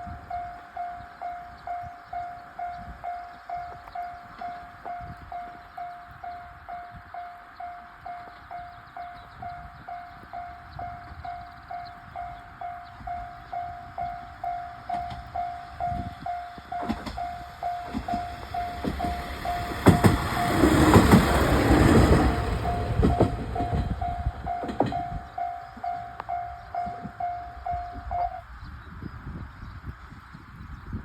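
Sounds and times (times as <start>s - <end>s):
diesel railcar passing: 0.0s - 28.8s
wheels clicking over rail joints: 10.2s - 27.7s.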